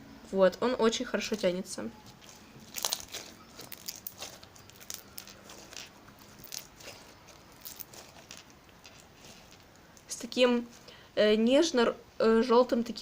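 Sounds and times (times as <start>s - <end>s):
slime crunching and crackling: 1.3s - 10.2s.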